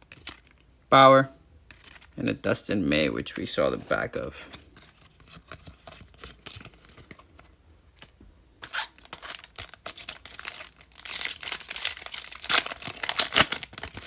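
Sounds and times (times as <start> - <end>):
wrapper tearing and crinkling: 8.6 - 14.0.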